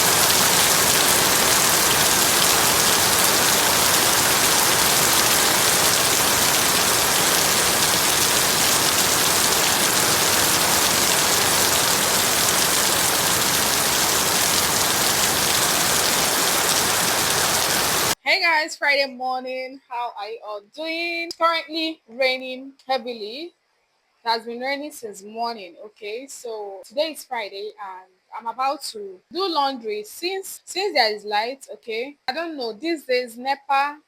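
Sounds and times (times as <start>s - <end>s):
heavy rain falling: 0.0s - 18.2s.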